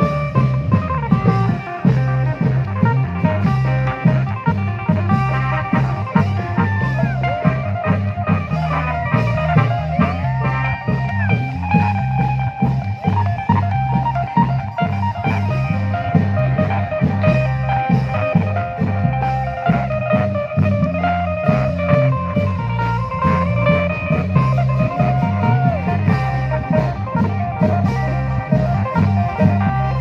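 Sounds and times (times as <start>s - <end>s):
bass line: 0.0s - 30.0s
drums fast steady beat: 0.0s - 30.0s
plucked lead with bending notes: 0.0s - 30.0s.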